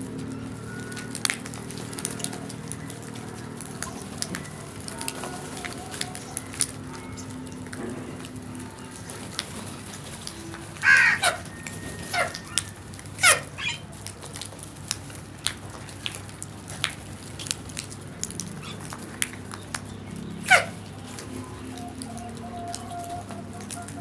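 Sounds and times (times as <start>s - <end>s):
crows cawing: 10.8s - 13.8s.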